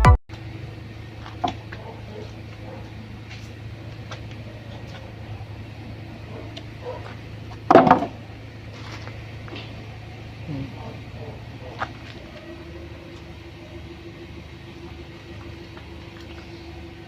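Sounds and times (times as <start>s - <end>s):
steady low hum: 0.3s - 17.0s
metal clunk: 7.6s - 8.2s.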